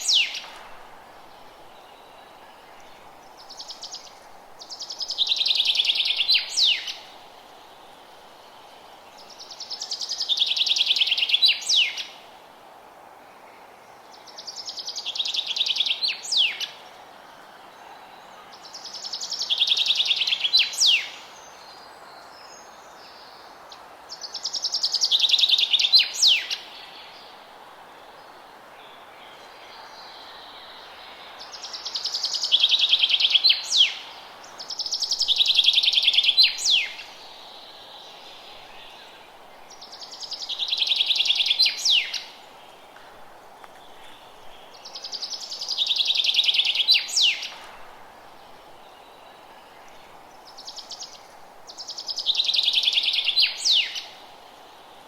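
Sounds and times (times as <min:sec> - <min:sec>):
faint hiss: 0:00.0 - 0:55.0.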